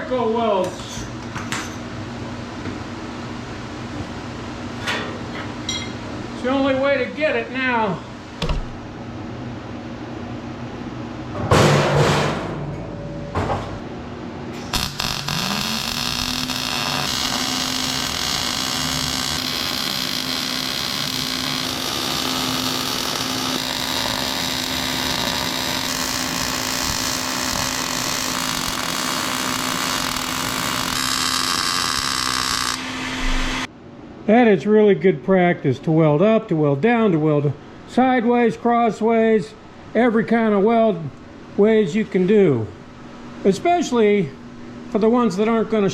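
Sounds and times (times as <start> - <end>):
welder hum: 14.6 - 33.7
welding arc crackle and hiss: 14.6 - 33.7.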